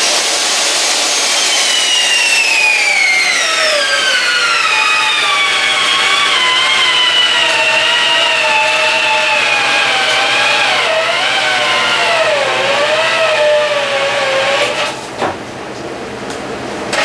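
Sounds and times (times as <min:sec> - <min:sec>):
electric drill motor whine: 0:00.0 - 0:15.0.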